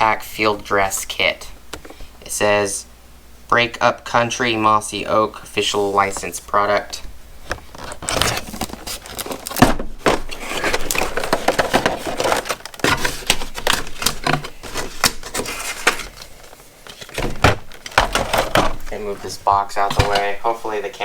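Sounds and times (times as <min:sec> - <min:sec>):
cardboard box being opened: 0:07.7 - 0:19.1.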